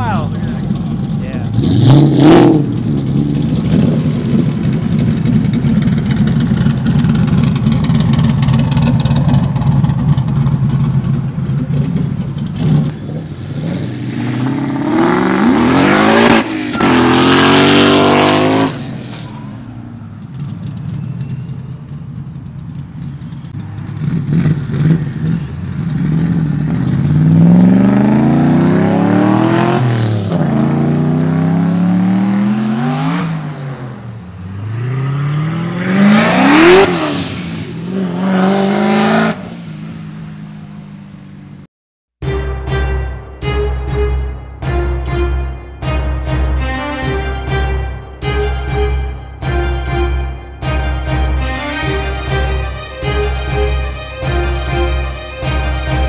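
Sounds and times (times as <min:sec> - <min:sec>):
race car engines revving: 0:00.0 - 0:41.1.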